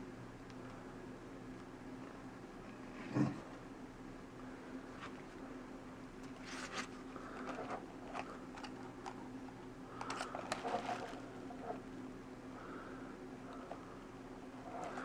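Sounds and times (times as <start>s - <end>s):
faint steady hum: 0.0s - 15.0s
laptop keyboard clicks and rustles: 6.2s - 11.8s, 14.6s - 15.0s.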